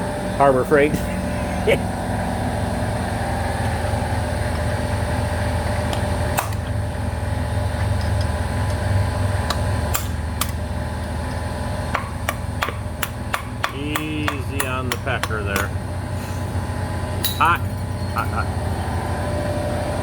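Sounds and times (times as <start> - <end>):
low mechanical hum: 0.0 - 20.0
sharp metal taps: 11.9 - 15.8, 17.2 - 17.8.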